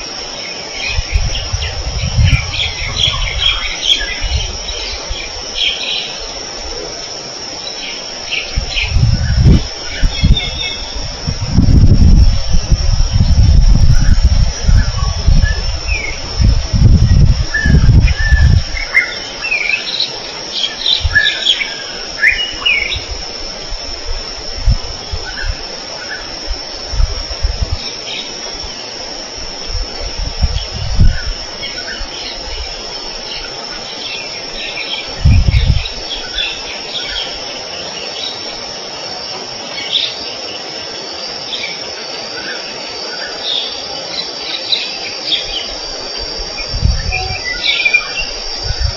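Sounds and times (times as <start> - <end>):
insects droning: 0.0 - 48.9
low rumbles on microphone: 0.9 - 4.7, 8.5 - 18.9, 26.5 - 27.9, 29.5 - 31.5, 35.1 - 36.1, 46.2 - 47.5.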